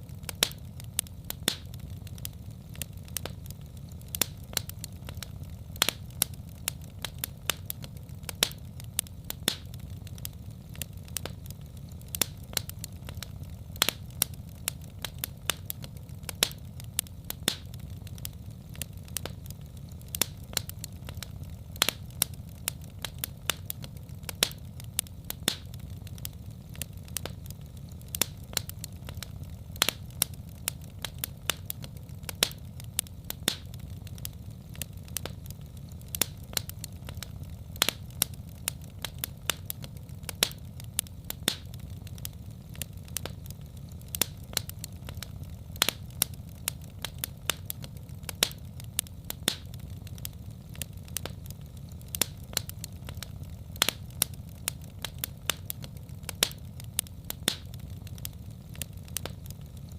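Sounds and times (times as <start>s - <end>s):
low rumble of flames: 0.0s - 59.9s
wood fire crackling and popping: 0.0s - 59.9s.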